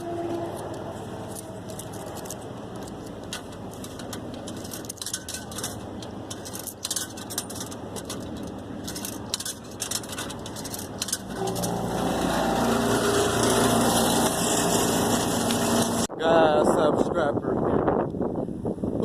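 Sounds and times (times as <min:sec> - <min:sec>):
motor engine running: 0:00.0 - 0:16.1
light clicking and rattling: 0:00.4 - 0:11.8.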